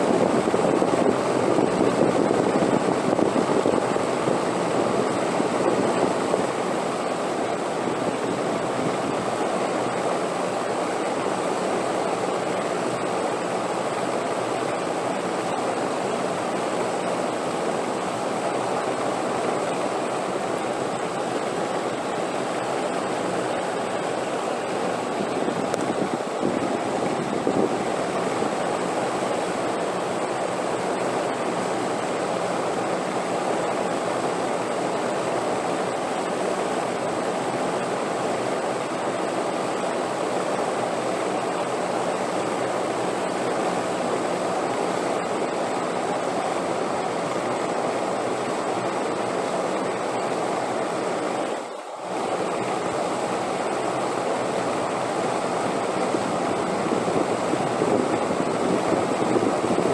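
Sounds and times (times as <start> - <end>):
steady wind rushing: 21.8 - 29.8, 55.0 - 59.9.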